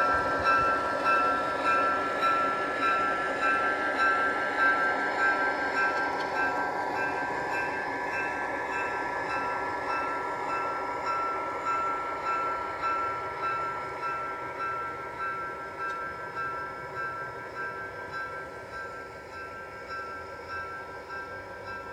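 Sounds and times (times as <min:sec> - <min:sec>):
model locomotive engine sound: 0:00.0 - 0:21.9.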